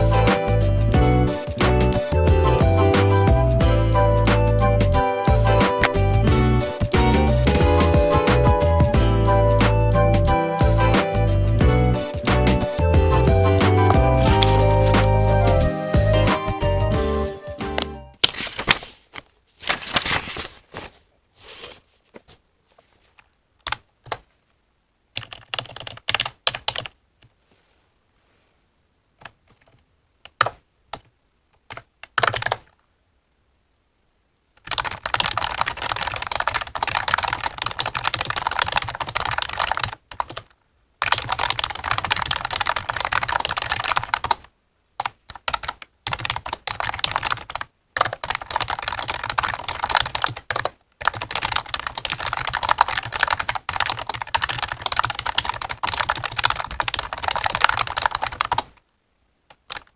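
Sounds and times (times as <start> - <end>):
keyboard typing: 12.1 - 15.5, 23.6 - 24.3, 25.2 - 27.0, 29.2 - 32.8, 34.6 - 58.8, 59.5 - 59.9.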